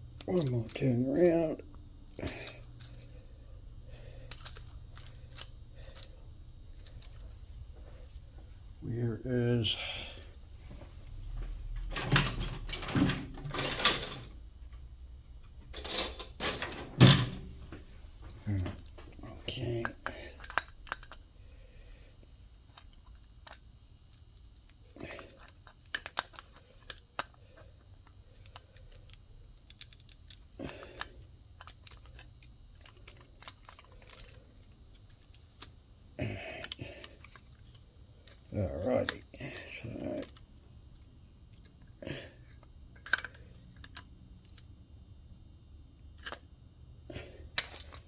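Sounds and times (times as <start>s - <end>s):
small metal parts clicking: 4.2s - 6.1s, 19.8s - 21.2s, 25.2s - 27.4s, 28.4s - 35.7s, 40.2s - 41.1s, 43.0s - 44.6s, 47.5s - 48.0s
metal tools clattering and scraping: 11.8s - 14.3s, 15.8s - 17.4s.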